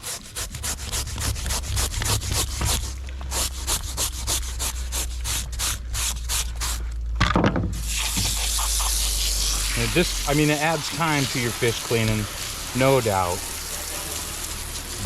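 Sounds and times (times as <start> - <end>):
steel brush scrubbing fish skin: 0.0 - 6.9, 7.8 - 14.7.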